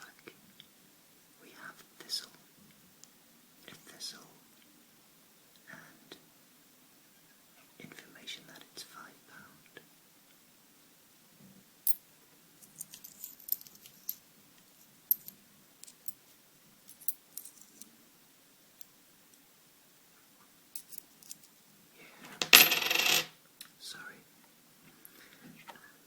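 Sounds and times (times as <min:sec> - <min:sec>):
coins clinking: 0:12.6 - 0:14.2, 0:15.1 - 0:16.2, 0:16.9 - 0:17.8, 0:20.8 - 0:21.5, 0:22.4 - 0:23.3.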